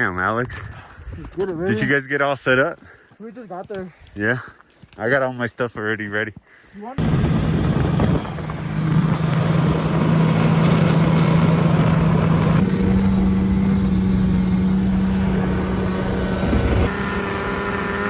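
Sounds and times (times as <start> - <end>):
snowmobile engine running: 7.0 - 18.0.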